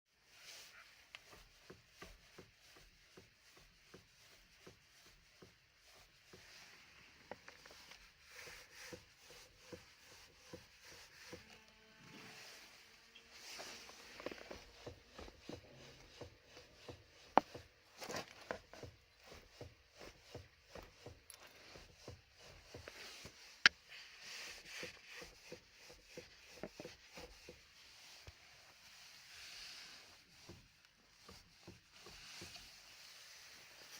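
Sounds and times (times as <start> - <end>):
faint steering knocks: 13.7 - 17.8.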